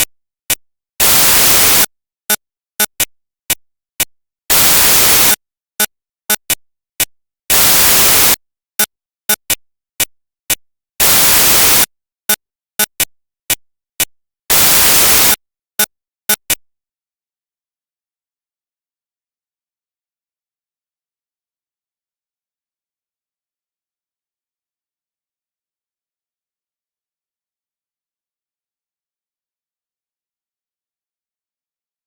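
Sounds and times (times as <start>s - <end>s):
sharp clicks ticking: 0.0s - 1.9s, 2.8s - 16.6s
bursts of static hiss: 1.0s - 1.9s, 4.5s - 5.4s, 7.5s - 8.4s, 11.0s - 11.9s, 14.5s - 15.4s.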